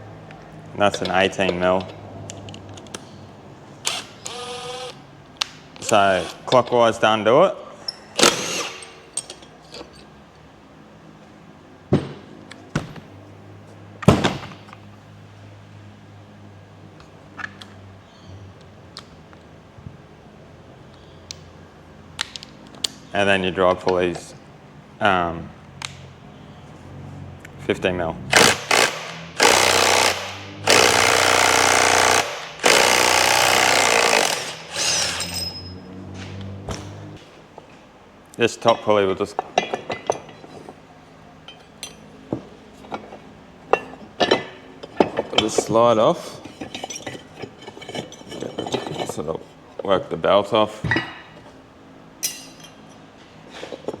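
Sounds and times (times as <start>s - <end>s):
impact wrench hammering: 28.3s - 35.7s.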